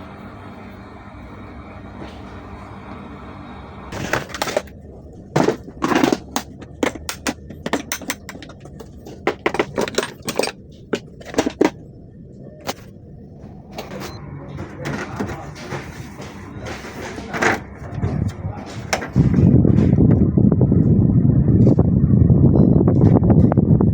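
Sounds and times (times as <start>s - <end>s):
steady low hum: 0.0s - 23.9s
hard parts clicking and knocking: 3.9s - 11.9s, 13.6s - 20.2s.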